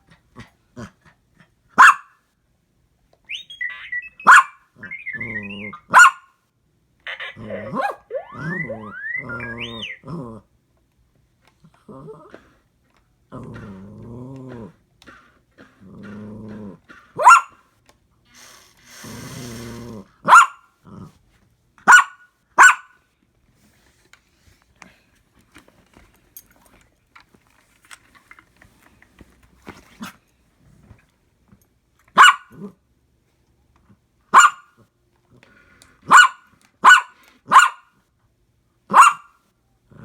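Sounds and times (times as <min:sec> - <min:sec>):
dog barking: 0:01.8 - 0:02.2, 0:04.2 - 0:04.6, 0:05.8 - 0:06.3, 0:07.6 - 0:08.6, 0:17.2 - 0:17.6, 0:20.2 - 0:20.7, 0:21.9 - 0:23.0, 0:32.2 - 0:32.6, 0:34.3 - 0:34.7, 0:36.1 - 0:37.9, 0:38.9 - 0:39.4
dog growling: 0:07.4 - 0:10.5, 0:11.7 - 0:12.6, 0:13.3 - 0:17.2, 0:19.0 - 0:20.2.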